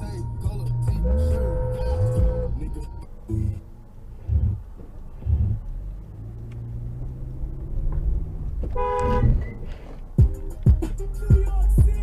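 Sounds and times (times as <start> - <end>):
low hum of road traffic: 0.0 - 12.0
car horn blast: 0.8 - 3.0, 8.7 - 9.6.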